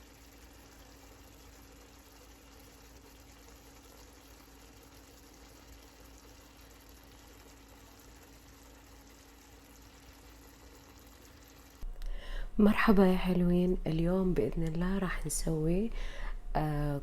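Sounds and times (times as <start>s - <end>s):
faint background hiss: 10.3s - 17.0s
low hum: 10.5s - 17.0s.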